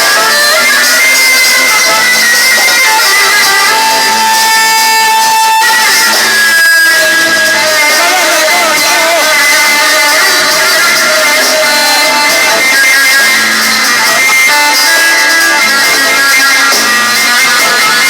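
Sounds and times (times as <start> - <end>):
band playing wavering melody: 0.0 - 18.0.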